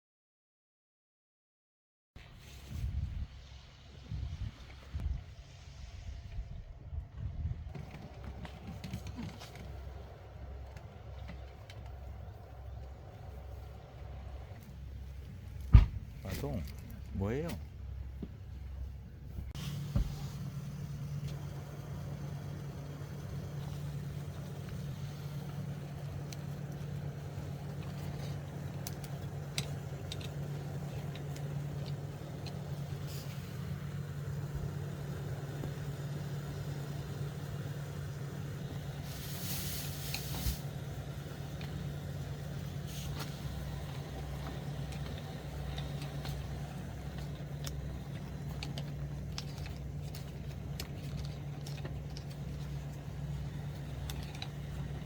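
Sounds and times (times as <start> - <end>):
low mechanical hum: 2.2 - 55.0
brief hiss: 39.0 - 40.7.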